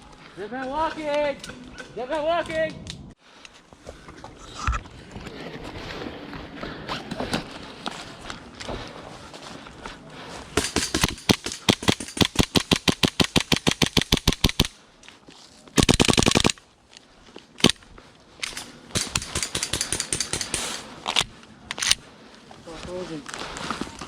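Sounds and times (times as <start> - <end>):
airsoft guns firing: 10.6 - 14.7, 15.8 - 16.6, 18.5 - 20.8.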